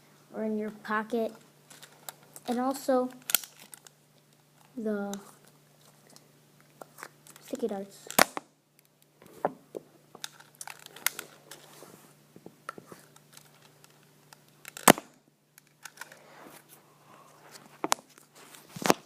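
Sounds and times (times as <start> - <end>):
toy pistol plastic clicks: 14.6 - 15.0.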